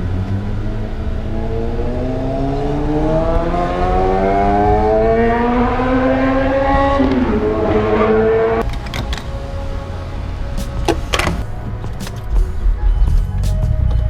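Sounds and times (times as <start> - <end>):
car engine accelerating: 0.0 - 8.6.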